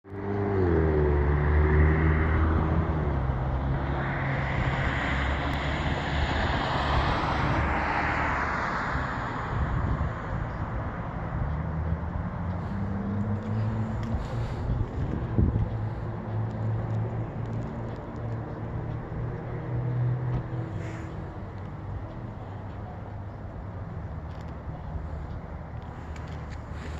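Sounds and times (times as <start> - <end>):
vehicle engine passing: 0.1 - 10.6, 11.4 - 26.9
rushing noise: 1.4 - 10.3.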